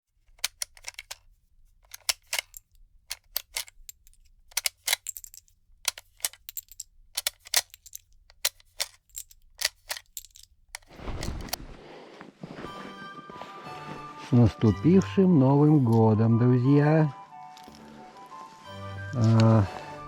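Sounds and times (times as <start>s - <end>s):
sharp clicks and ticks: 1.8s - 11.5s.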